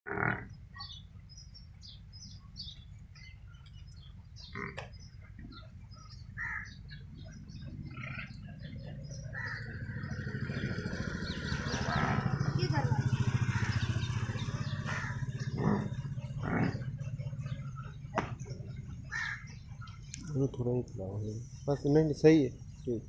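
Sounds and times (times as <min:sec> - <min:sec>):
small birds chirping: 0:00.1 - 0:23.0
low pulsing engine rumble: 0:00.5 - 0:23.0.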